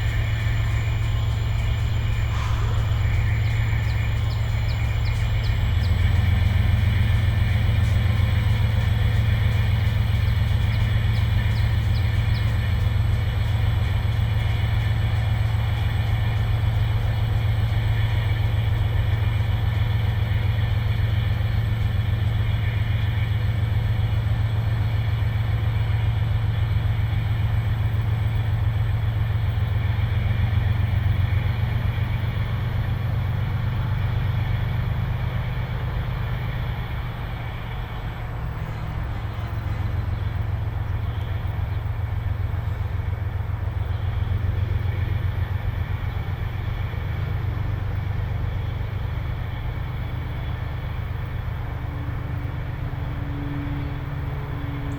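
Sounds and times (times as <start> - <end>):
faint high whine: 0.0 - 14.6
locomotive low rumble: 0.0 - 54.9.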